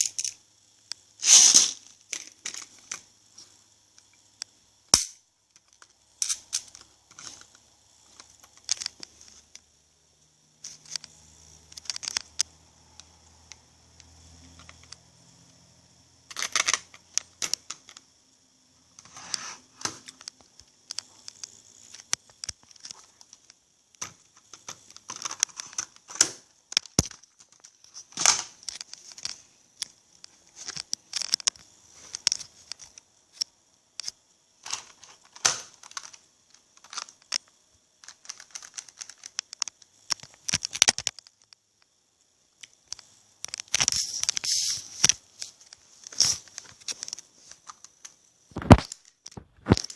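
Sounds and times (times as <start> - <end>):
hard plastic parts clicking and rattling: 5.5 - 9.7, 10.6 - 12.5, 19.0 - 41.6, 42.6 - 49.9.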